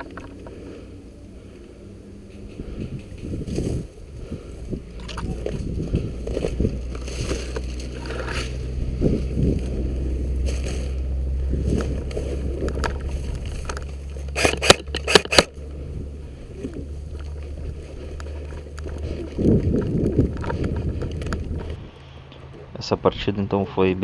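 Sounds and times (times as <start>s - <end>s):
camera handling rumble: 0.0s - 22.7s
wind on microphone: 1.8s - 14.6s, 15.6s - 22.0s
sharp cracks: 11.7s - 15.8s.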